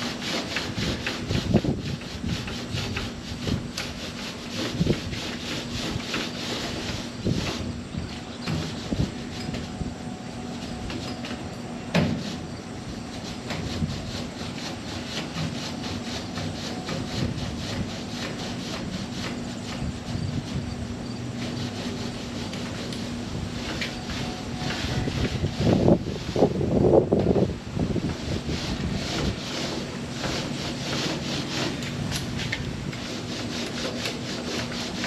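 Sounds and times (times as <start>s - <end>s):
paint roller rubbing strokes: 0.0s - 35.0s.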